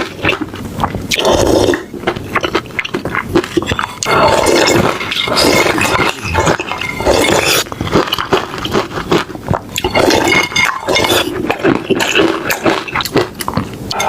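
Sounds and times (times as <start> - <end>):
mouth sounds of eating: 0.0 - 14.0
cutlery clinking and scraping bowls: 3.6 - 8.4, 9.7 - 14.0.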